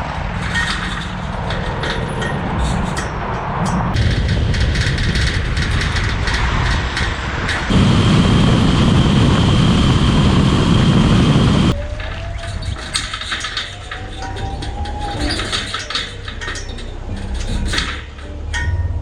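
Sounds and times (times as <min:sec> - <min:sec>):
high whine: 0:00.0 - 0:12.7
vehicle running: 0:00.0 - 0:19.0.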